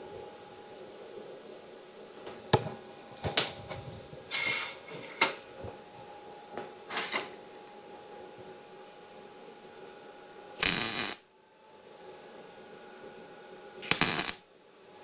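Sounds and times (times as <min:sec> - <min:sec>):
metal clinks and knocks: 0:04.3 - 0:05.4.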